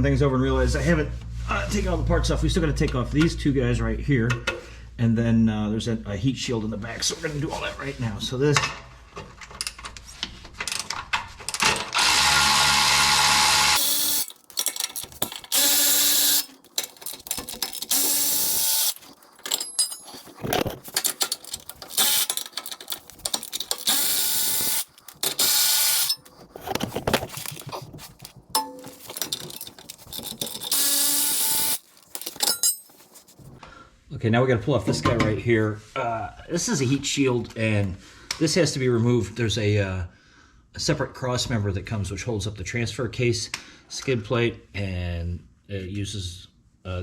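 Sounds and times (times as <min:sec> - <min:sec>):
power tool bursts: 0:12.0 - 0:14.4, 0:15.5 - 0:16.6, 0:17.9 - 0:19.0, 0:22.0 - 0:22.4, 0:23.8 - 0:26.2, 0:30.7 - 0:31.8
clicks and tool handling: 0:13.8 - 0:33.6.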